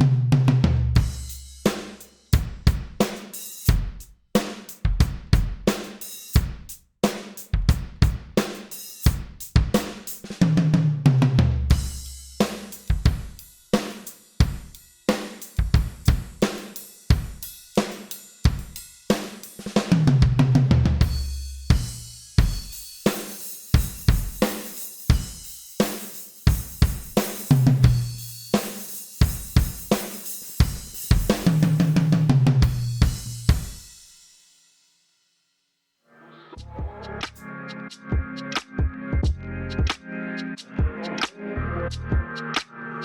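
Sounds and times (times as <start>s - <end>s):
drum kit groove: 0.0s - 34.4s, 36.6s - 41.3s, 41.9s - 42.7s.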